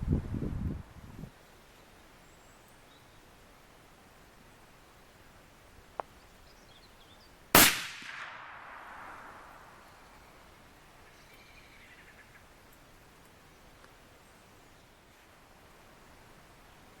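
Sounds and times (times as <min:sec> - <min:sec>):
rifle shot: 0:07.6 - 0:09.8.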